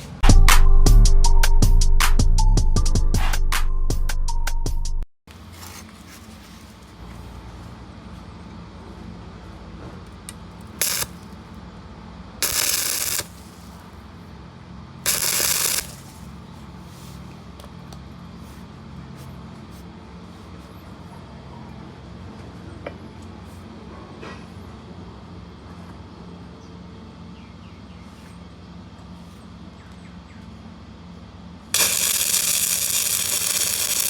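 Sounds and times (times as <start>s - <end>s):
welding arc crackling hiss: 10.8s - 11.4s, 12.4s - 14.0s, 15.1s - 16.4s, 31.8s - 34.0s.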